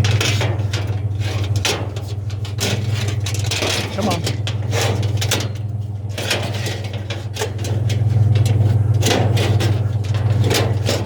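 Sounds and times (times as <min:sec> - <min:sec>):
scrap metal clanking and scraping: 0:00.0 - 0:11.0
vehicle engine idling: 0:00.0 - 0:11.0.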